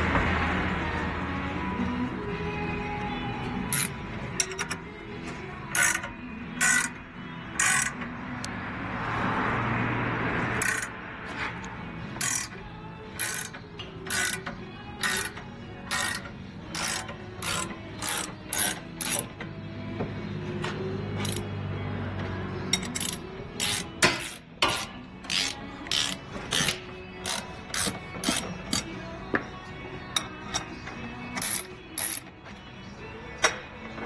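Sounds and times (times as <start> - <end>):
faint music: 0.0 - 34.0
ratchet wrench clicking: 3.7 - 4.8, 5.7 - 7.0, 7.6 - 8.0, 10.6 - 11.0, 12.2 - 19.4, 21.2 - 21.5, 22.7 - 28.9, 31.3 - 32.3.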